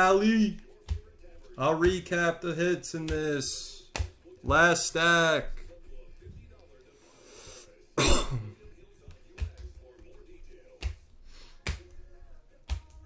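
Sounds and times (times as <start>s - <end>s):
cards tapping down: 0.0s - 6.7s, 8.6s - 13.0s
faint music: 0.0s - 13.0s
trading cards rustling: 8.8s - 13.0s.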